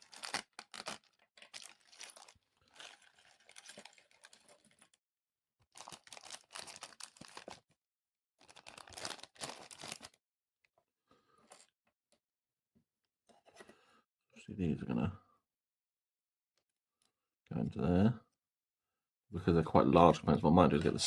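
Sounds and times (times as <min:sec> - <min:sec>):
packaging crinkling and rustling: 0:00.0 - 0:05.0, 0:05.7 - 0:07.7, 0:08.4 - 0:10.2.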